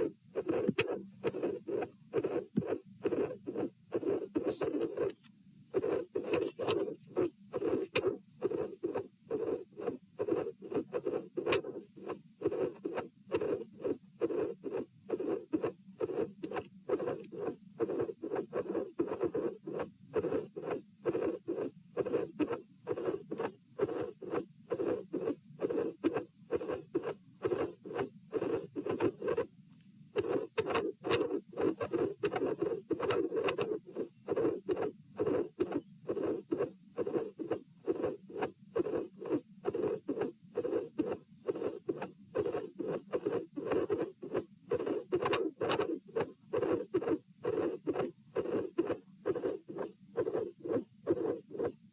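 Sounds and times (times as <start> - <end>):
heartbeat through stethoscope: 0.0 - 5.2, 5.8 - 29.5, 30.2 - 51.9.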